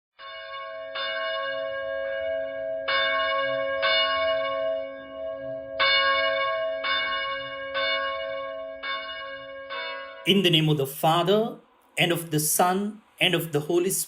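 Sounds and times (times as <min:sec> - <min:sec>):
church bell ringing: 0:00.2 - 0:11.3.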